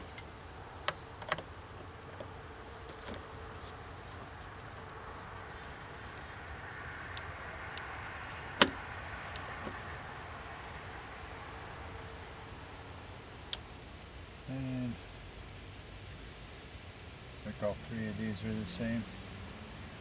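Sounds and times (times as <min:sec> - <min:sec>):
small clicks and taps of screws: 0:00.1 - 0:02.3, 0:05.8 - 0:09.9.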